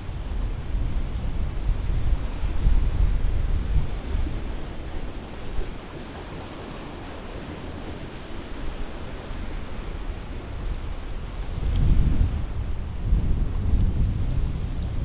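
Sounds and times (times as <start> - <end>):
wind buffeting microphone: 10.4 - 15.0.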